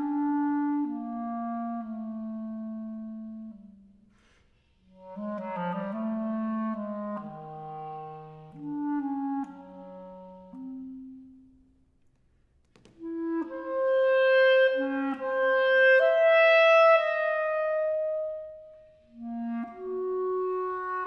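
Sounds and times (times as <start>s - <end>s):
clarinet playing: 0.0s - 3.7s, 4.9s - 11.6s, 13.0s - 21.0s.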